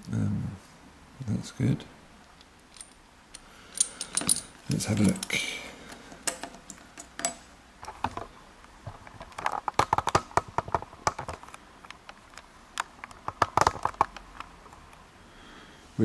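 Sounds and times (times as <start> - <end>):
small metal parts clicking: 2.4 - 5.4, 6.2 - 7.4.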